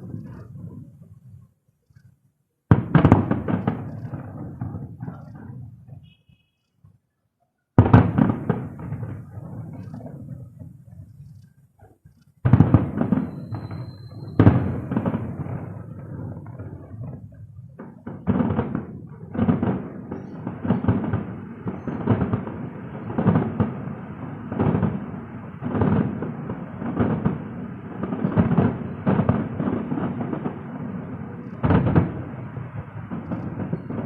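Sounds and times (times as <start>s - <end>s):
fireworks bursting with rumble: 0.0s - 2.1s, 2.7s - 6.4s, 7.8s - 34.0s.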